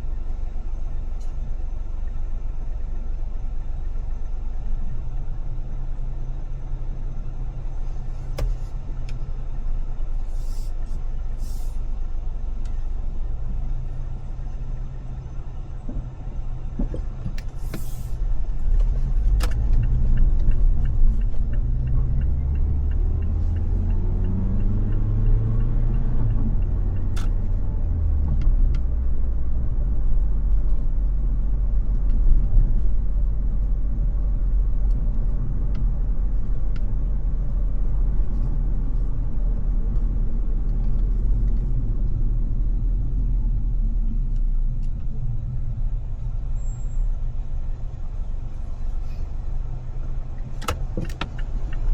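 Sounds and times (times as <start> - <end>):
engine and road rumble: 0.0 - 51.9
vehicle accelerating: 17.7 - 32.8.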